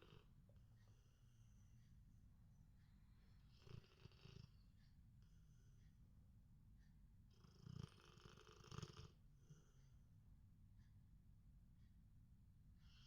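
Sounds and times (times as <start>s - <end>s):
dog snoring: 3.5s - 4.6s, 7.3s - 9.2s.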